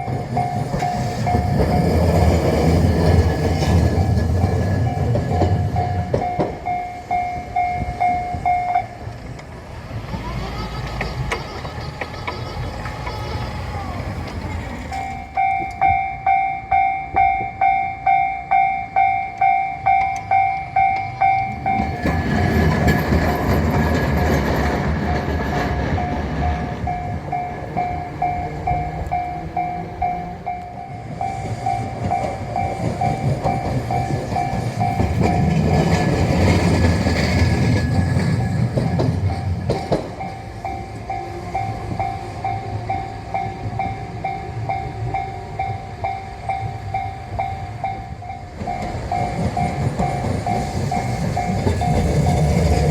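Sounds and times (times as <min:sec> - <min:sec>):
trams rumbling past: 0:00.0 - 0:52.9
level crossing bell ringing: 0:15.0 - 0:22.0, 0:25.9 - 0:36.2.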